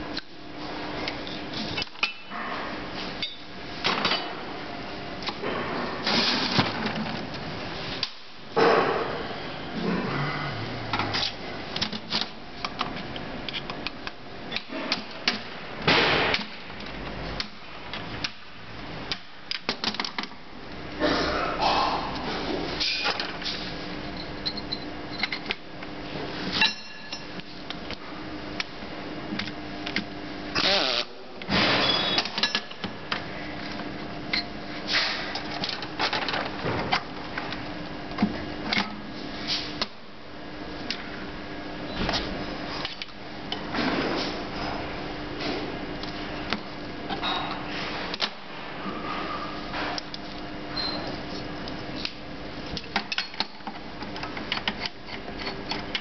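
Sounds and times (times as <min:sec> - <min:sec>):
steady low hum: 0:00.0 - 0:56.0
tools clicking and knocking: 0:52.8 - 0:56.0.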